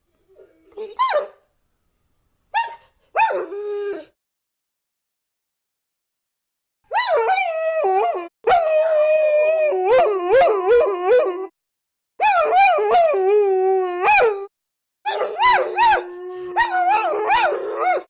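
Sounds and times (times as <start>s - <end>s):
dogs howling: 15.1s - 18.0s.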